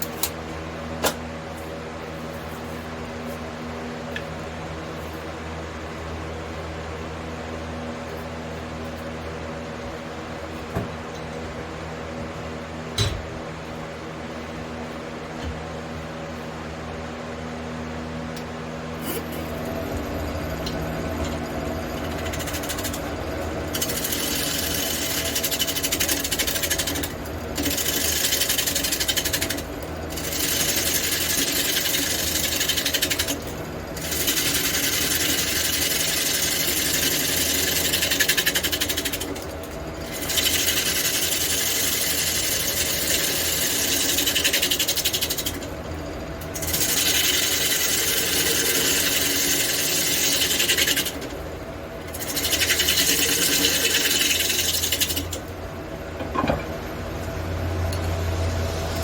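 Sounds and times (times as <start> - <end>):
wood lathe running: 19.2 - 55.6
turning tool cutting wood: 20.1 - 33.4, 34.0 - 45.8, 46.4 - 51.4, 52.1 - 55.5.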